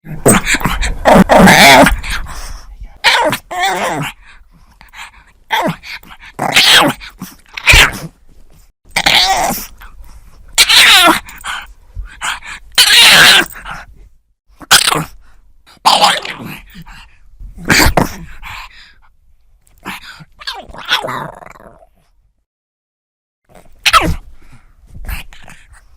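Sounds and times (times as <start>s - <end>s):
dog snorting and grunting: 0.0s - 8.2s, 15.8s - 18.7s.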